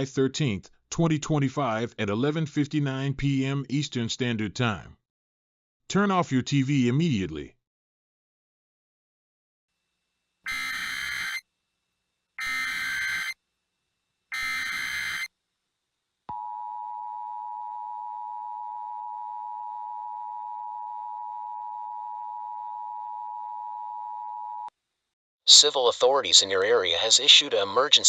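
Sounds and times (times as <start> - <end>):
alert data bursts: 10.5 - 11.4, 12.4 - 13.4, 14.3 - 15.3
two-tone attention signal: 10.5 - 11.4, 12.4 - 13.4, 14.3 - 15.3.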